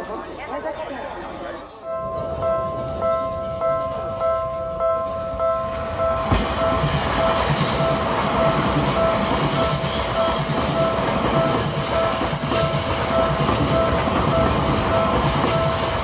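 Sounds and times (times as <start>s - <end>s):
level crossing bell ringing: 1.9s - 16.0s
train wheels clattering on rails: 5.7s - 16.0s.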